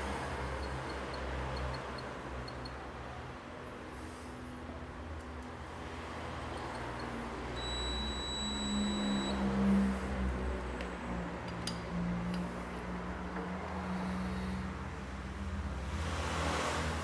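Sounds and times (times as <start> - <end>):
low workshop hum: 0.0 - 17.0
high electronic beep: 7.6 - 9.5.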